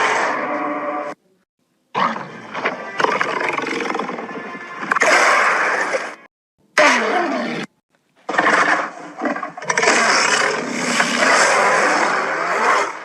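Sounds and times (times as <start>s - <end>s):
monster roar: 9.6s - 13.0s.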